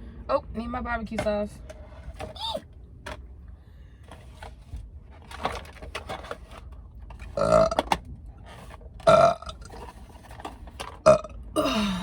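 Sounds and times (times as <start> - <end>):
woman burping: 11.1 - 12.0.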